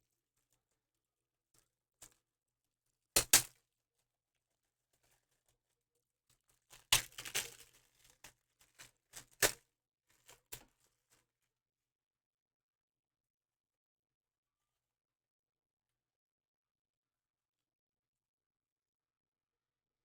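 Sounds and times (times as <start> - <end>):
foil wrapper crinkling and tearing: 6.7 - 9.6
cards clicking and rustling: 6.8 - 9.6.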